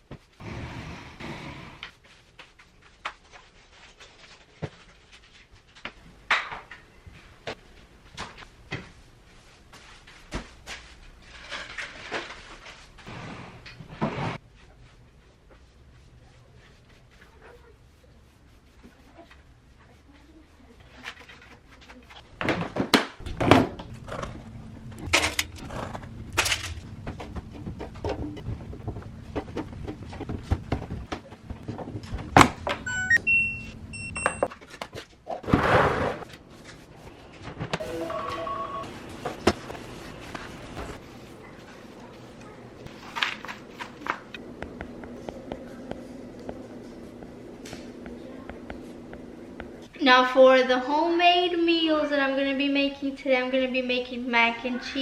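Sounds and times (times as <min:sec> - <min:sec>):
noisy scraping: 0:23.2 - 0:32.4
appliance hum: 0:23.2 - 0:34.5, 0:35.4 - 0:49.9
electronic beeps: 0:32.8 - 0:34.5, 0:37.8 - 0:38.9.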